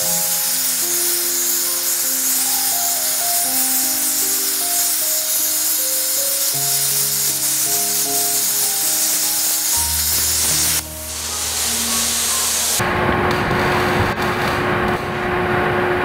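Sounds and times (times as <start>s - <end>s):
melodic background music: 0.0s - 12.8s
steady high hiss: 0.0s - 12.8s.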